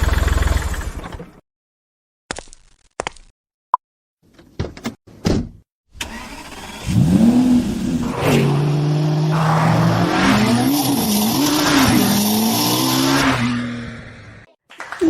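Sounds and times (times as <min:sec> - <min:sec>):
race car engine revving: 0:06.1 - 0:14.5.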